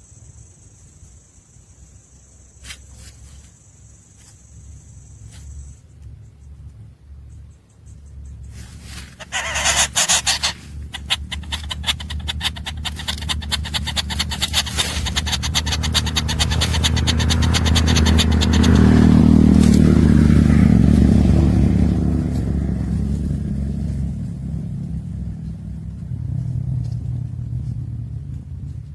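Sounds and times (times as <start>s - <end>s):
vehicle engine rumble: 0.0s - 28.9s
rapid rattling clatter: 8.8s - 21.5s.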